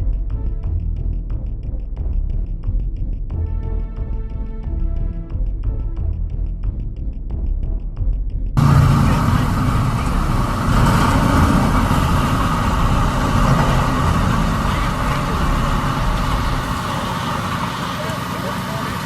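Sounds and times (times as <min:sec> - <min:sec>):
heavy diesel equipment running: 0:08.6 - 0:19.0.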